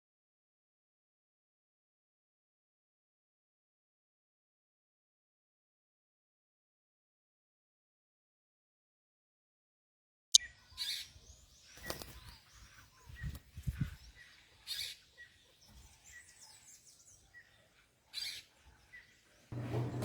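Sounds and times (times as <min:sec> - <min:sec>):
birds calling and chirping: 0:10.4 - 0:20.0.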